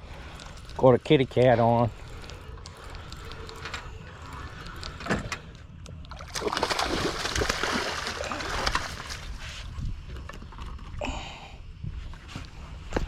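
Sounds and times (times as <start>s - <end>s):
fish splashing in water: 6.2s - 9.3s.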